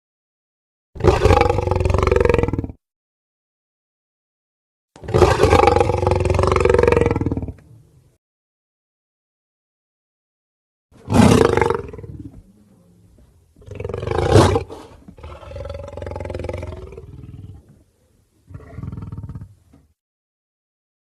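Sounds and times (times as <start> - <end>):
lion growling and snarling: 1.0 - 2.8, 5.0 - 7.6, 11.0 - 12.6, 13.6 - 17.8, 18.5 - 19.6.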